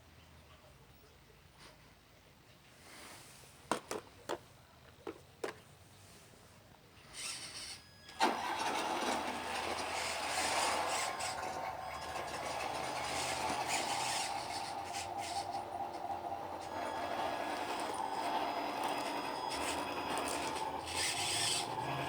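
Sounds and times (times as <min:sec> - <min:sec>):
model motor whining: 0:07.2 - 0:22.0.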